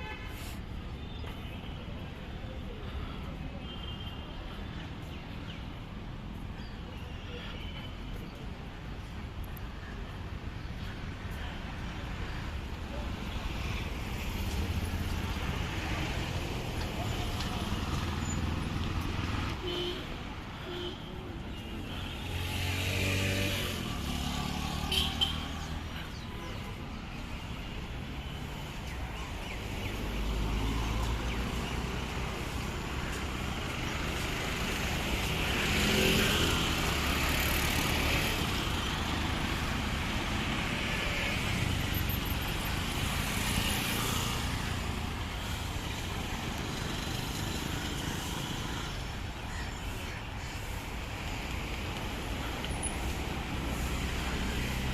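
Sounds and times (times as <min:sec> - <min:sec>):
motorcycles driving past: 0:22.0 - 0:26.0, 0:29.6 - 0:49.1
cars driving past: 0:22.0 - 0:26.1, 0:29.5 - 0:49.3.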